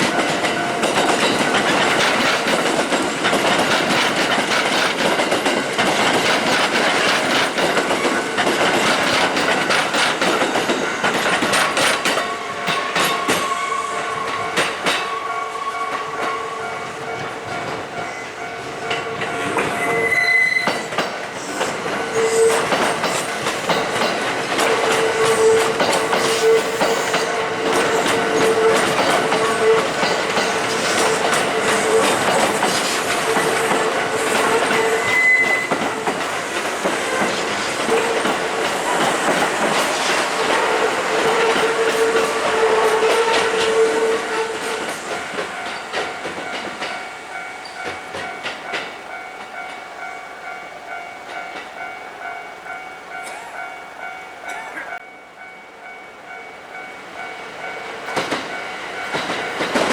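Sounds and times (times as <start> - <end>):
train wheels clattering over rail joints: 0.0 - 13.5, 20.7 - 49.8, 58.0 - 59.9
train wheel squeal: 5.8 - 48.8.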